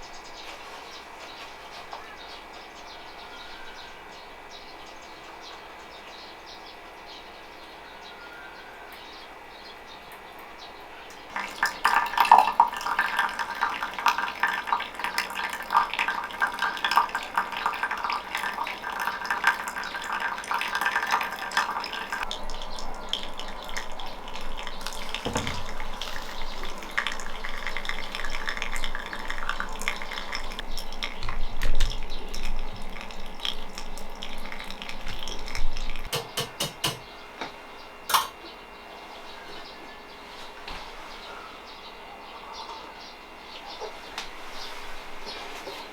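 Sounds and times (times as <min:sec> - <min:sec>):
dishes and utensils clattering: 0:24.8 - 0:27.0, 0:36.1 - 0:37.1, 0:38.1 - 0:38.4.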